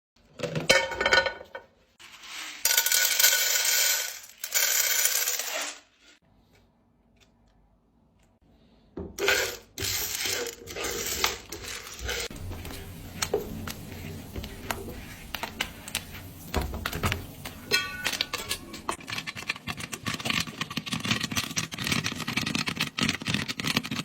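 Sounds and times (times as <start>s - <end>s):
popcorn kernels rattling in metal pot: 2.6s - 5.7s, 9.2s - 24.0s.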